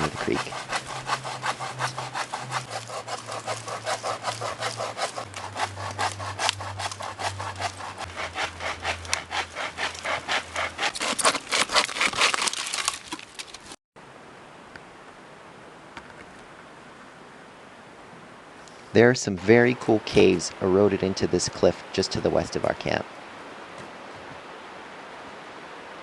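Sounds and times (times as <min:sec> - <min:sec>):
hand saw cutting wood: 0:00.0 - 0:13.7.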